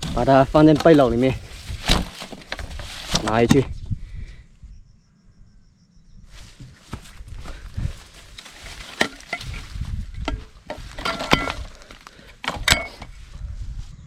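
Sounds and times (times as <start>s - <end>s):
rustling plants in basket: 0.0s - 3.8s, 6.3s - 14.0s
sharp knocks and clinks: 10.2s - 11.8s, 12.4s - 13.1s.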